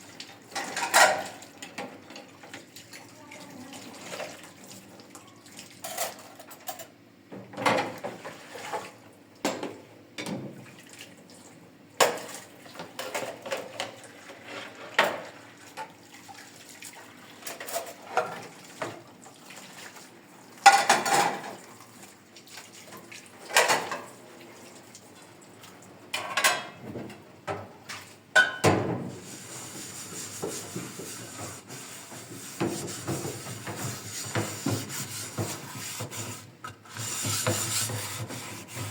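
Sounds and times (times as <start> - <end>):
dishes and cutlery clinking: 0.5 - 1.4, 5.8 - 6.9, 26.1 - 26.8, 27.9 - 28.8.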